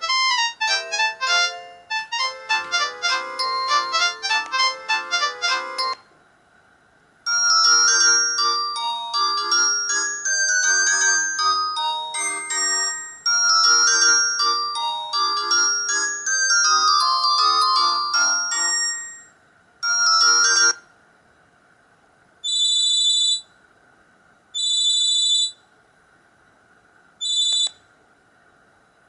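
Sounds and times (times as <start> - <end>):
electronic phone ringtone melody: 0.0 - 6.0, 7.3 - 20.8.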